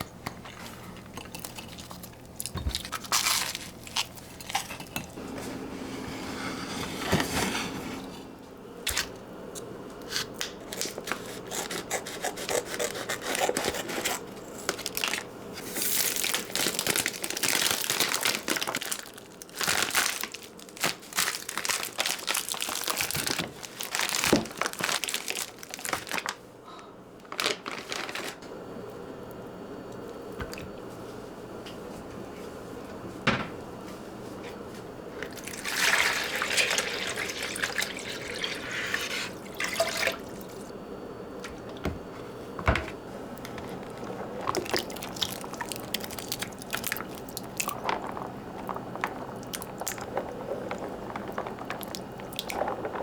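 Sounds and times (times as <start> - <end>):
water running and splashing: 35.4 - 40.7.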